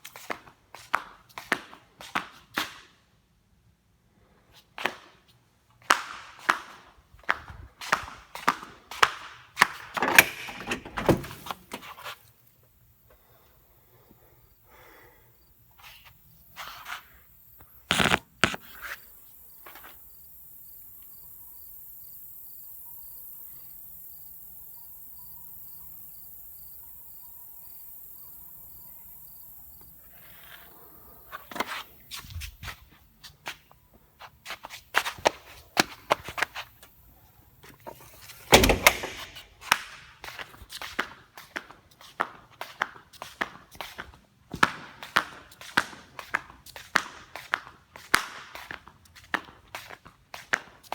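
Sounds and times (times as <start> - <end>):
flip-flops slapping: 34.2 - 36.8.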